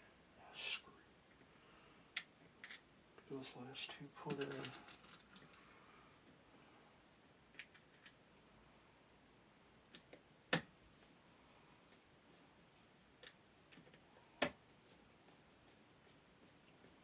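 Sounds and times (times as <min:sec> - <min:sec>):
light ticks of small parts: 0:03.9 - 0:05.7, 0:11.8 - 0:17.0.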